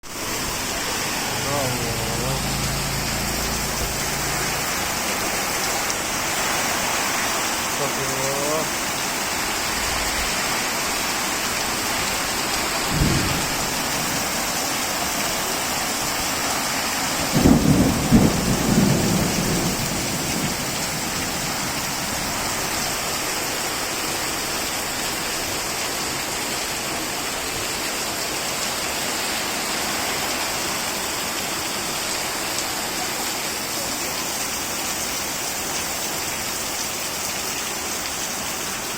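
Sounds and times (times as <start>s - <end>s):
heavy rain pouring: 0.0s - 38.9s
low rumbles: 0.2s - 6.6s.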